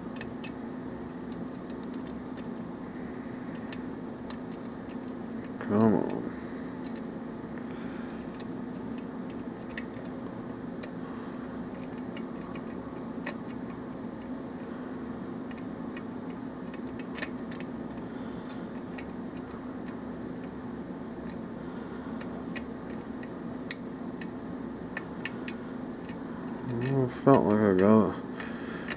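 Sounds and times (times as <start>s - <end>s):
lock pick clicking in lock: 1.3s - 2.6s, 3.6s - 5.6s, 11.8s - 13.8s, 15.5s - 18.0s.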